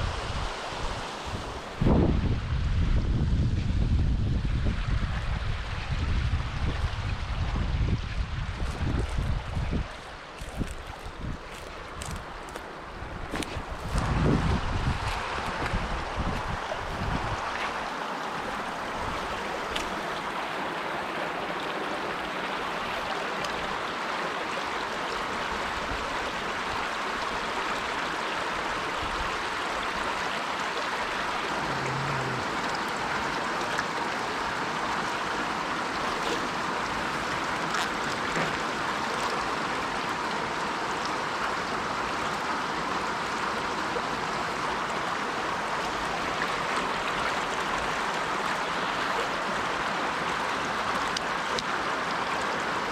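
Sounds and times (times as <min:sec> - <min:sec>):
stream water rushing over rocks: 0:00.0 - 0:02.6, 0:04.8 - 0:52.9.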